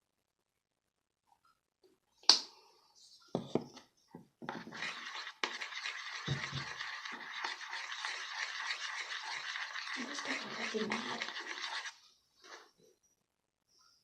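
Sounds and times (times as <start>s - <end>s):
slime stirred in container: 4.4s - 12.0s.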